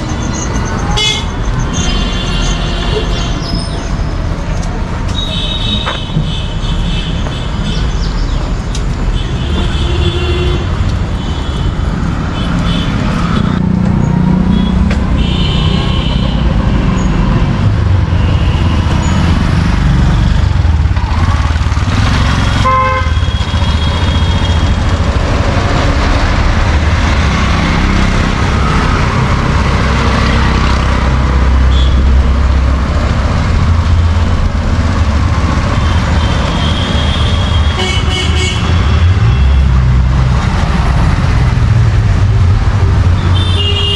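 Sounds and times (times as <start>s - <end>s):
vehicle engines running: 0.0s - 43.9s
car horns honking: 0.7s - 3.6s, 14.4s - 16.6s, 22.2s - 25.0s, 35.8s - 39.8s, 43.0s - 43.9s.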